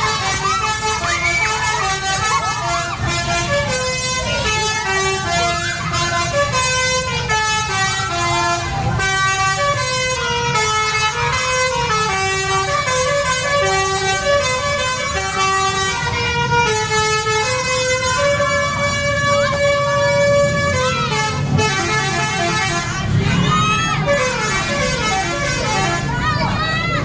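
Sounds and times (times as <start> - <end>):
bus engine low rumble: 0.0 - 27.0
multi-tone bus horn tune: 0.0 - 27.0.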